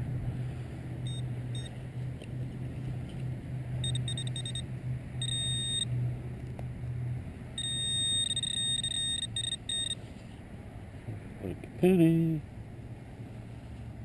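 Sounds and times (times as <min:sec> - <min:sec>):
low steady hum: 0:00.0 - 0:14.0
metal detector beeping: 0:01.0 - 0:01.7, 0:03.8 - 0:05.9, 0:07.6 - 0:10.0.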